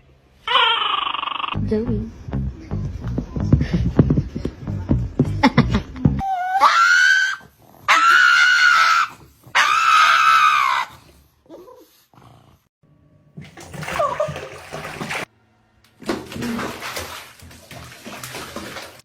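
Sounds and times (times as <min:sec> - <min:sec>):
animal high-pitched cries: 0:00.4 - 0:01.6, 0:06.2 - 0:10.9.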